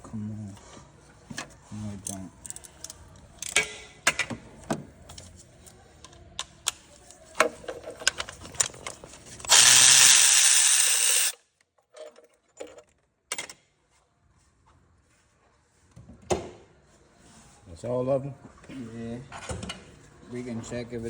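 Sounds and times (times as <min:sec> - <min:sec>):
power tool running: 0:09.5 - 0:11.4.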